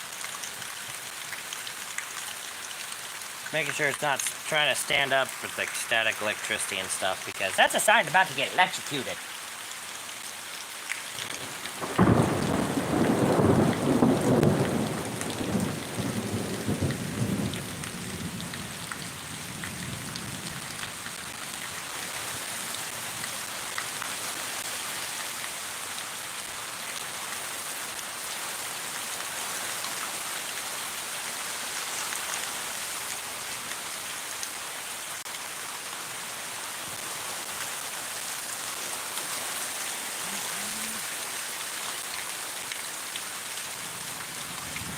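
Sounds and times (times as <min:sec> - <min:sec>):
steady rain falling: 0:00.0 - 0:44.9
thunderclap rumbling: 0:11.8 - 0:18.3.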